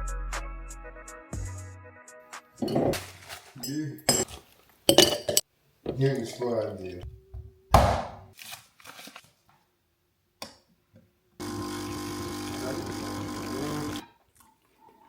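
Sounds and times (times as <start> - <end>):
coffee machine buzzing hum: 11.4 - 14.0.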